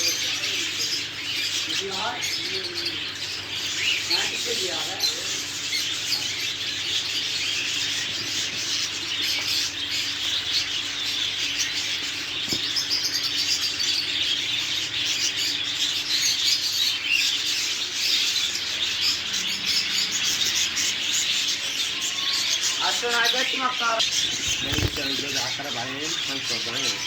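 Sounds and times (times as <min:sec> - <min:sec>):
caged birds chirping: 0:00.0 - 0:27.0
wing flutters: 0:24.0 - 0:25.8.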